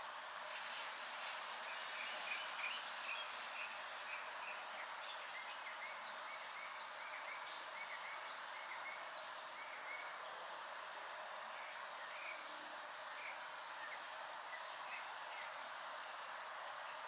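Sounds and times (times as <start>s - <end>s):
light rain hissing: 0.0s - 17.0s.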